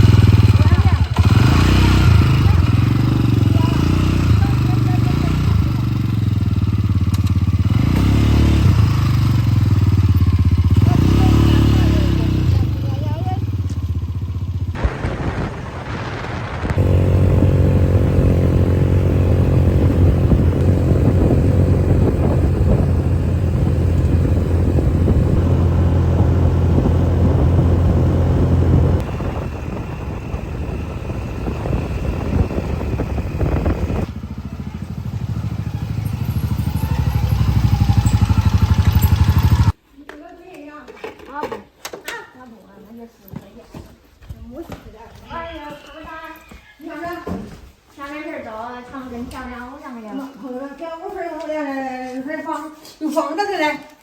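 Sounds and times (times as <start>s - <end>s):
motorcycle engine running: 0.0s - 39.8s.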